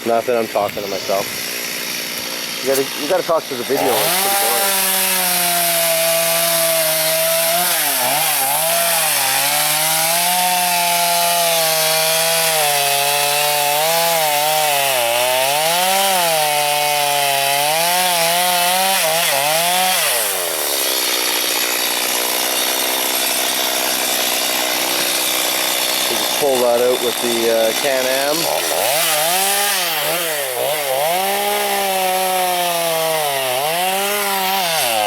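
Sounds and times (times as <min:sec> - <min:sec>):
chainsaw cutting wood: 0:00.0 - 0:35.0.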